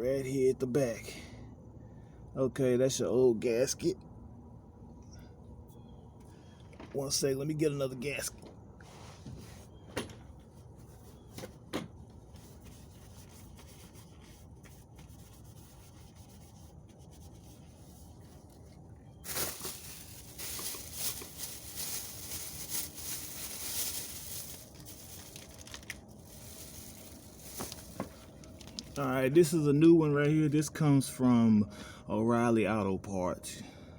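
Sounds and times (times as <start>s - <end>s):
packaging crinkling and rustling: 17.9s - 29.0s.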